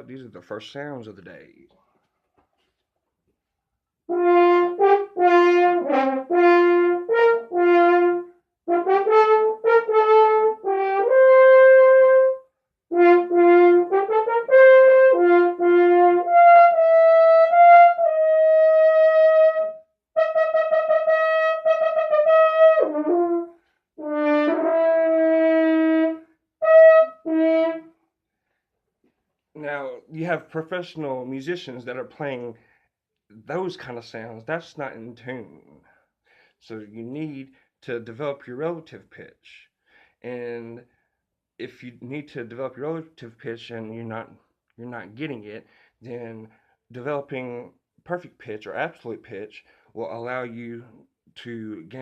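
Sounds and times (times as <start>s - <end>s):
brass horn playing solo: 4.1s - 27.9s
player breathing: 39.8s - 40.2s.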